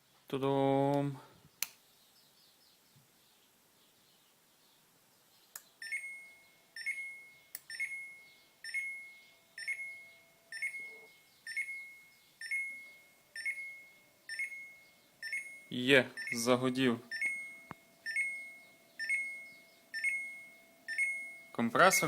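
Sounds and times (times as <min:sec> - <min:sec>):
short high electronic beeps: 0:17.1 - 0:21.6.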